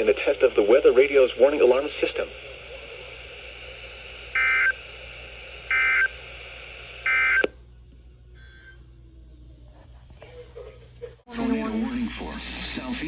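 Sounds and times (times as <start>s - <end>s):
radio hiss: 0.0s - 7.5s, 11.4s - 13.0s.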